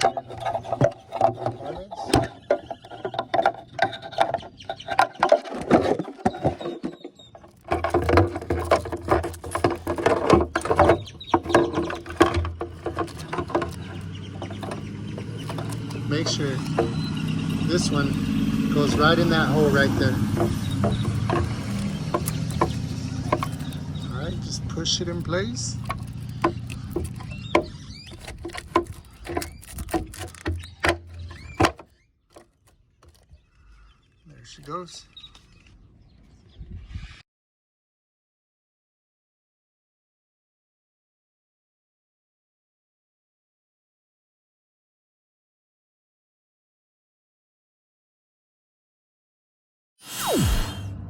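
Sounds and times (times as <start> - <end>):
plastic clicks and rattles: 0.0 - 18.1, 18.8 - 33.8
plastic squeaks: 0.0 - 36.2.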